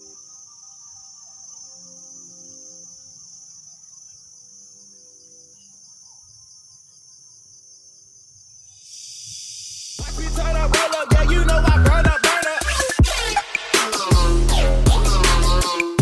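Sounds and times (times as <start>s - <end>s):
insects droning: 0.0s - 16.0s
electronic music with heavy beat: 10.0s - 16.0s.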